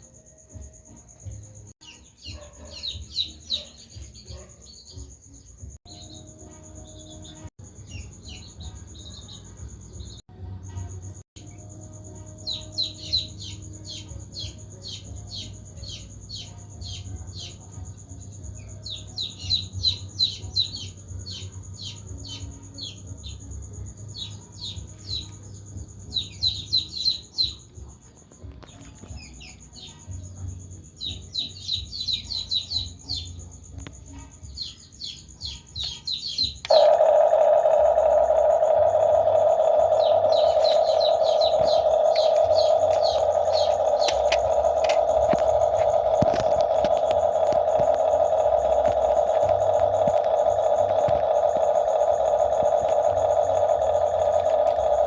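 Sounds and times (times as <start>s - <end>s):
birds chirping: 1.8s - 10.2s, 12.4s - 28.0s, 28.6s - 33.6s, 34.4s - 55.0s
high whine: 36.6s - 55.0s
low steady hum: 36.7s - 55.0s.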